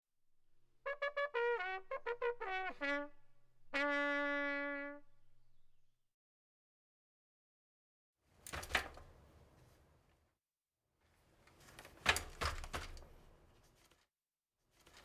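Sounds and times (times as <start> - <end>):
trumpet phrase: 0.9 - 5.3.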